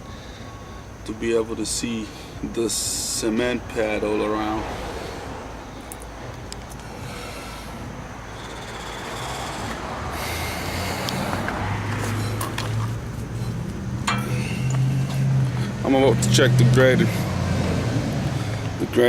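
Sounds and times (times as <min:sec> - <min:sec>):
vehicle engine running: 0:04.1 - 0:19.0.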